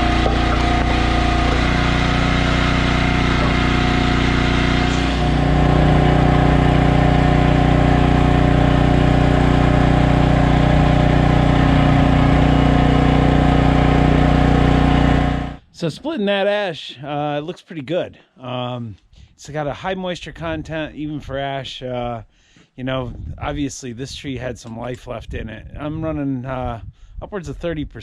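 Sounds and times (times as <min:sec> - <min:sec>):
log splitter engine running: 0:00.0 - 0:15.6.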